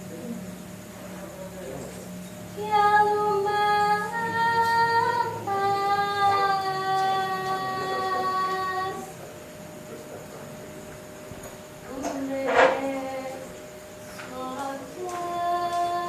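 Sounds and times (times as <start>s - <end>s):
woman singing long held notes: 2.6s - 9.1s, 11.9s - 16.0s.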